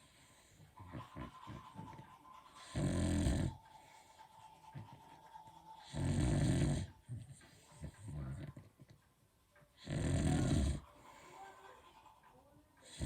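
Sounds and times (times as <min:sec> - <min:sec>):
dog snoring: 0:00.0 - 0:04.0, 0:05.8 - 0:08.9, 0:09.8 - 0:10.9.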